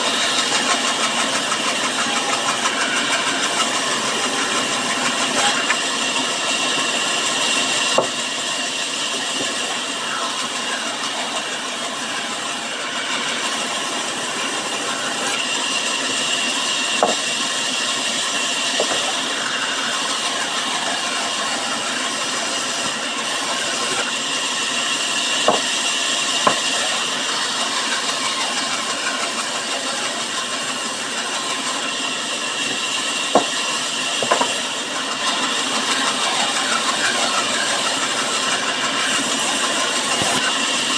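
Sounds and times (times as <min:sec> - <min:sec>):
saw cutting timber: 0:00.0 - 0:40.9.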